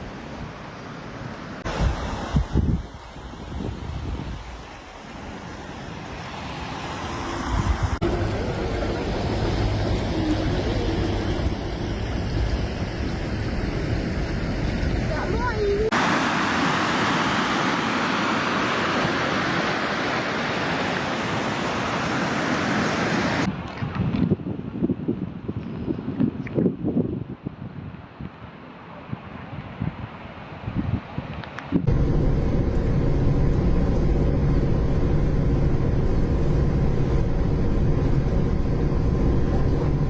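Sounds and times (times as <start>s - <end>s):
rushing floodwater: 0.0s - 24.0s
engine rumbling: 6.6s - 15.9s, 31.8s - 40.0s.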